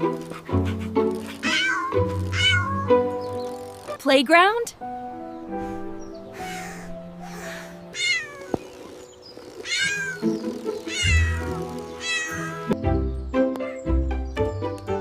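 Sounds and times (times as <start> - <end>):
background music: 0.0 - 15.0
cat meowing: 1.4 - 3.0, 7.9 - 8.6, 9.6 - 10.2, 10.8 - 12.8.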